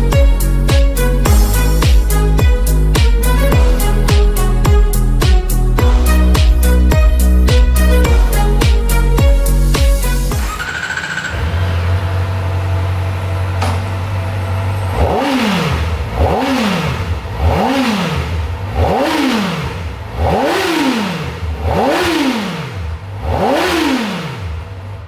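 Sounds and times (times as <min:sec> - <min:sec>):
motorcycle engine idling: 0:00.0 - 0:25.0
motorcycle throttle blips: 0:10.4 - 0:25.0.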